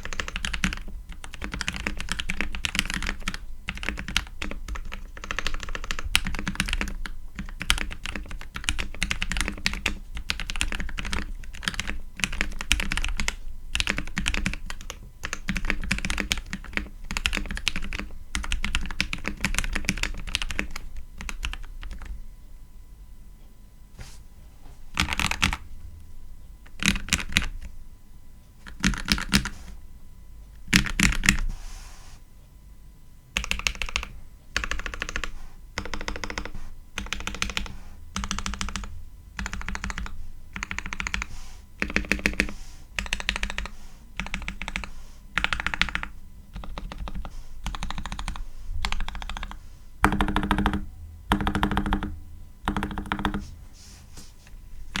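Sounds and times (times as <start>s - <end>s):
typing on mechanical keyboard: 0.0s - 22.1s, 25.0s - 25.6s, 26.7s - 27.6s, 28.6s - 29.5s, 30.7s - 31.4s, 33.4s - 53.4s.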